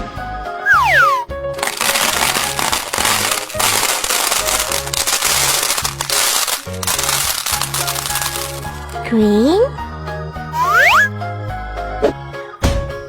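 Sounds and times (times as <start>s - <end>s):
loud crackling hiss: 1.6s - 9.0s.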